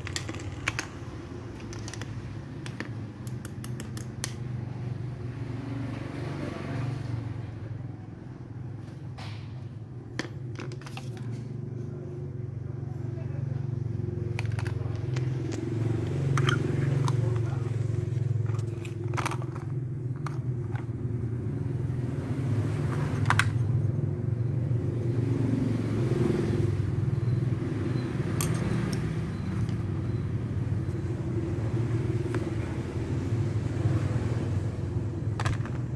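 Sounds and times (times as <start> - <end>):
sharp clicks and crackles: 0.0 - 4.4.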